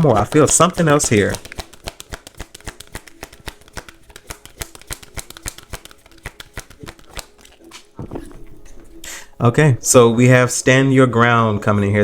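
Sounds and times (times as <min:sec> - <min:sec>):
cards being shuffled: 0:00.0 - 0:09.4.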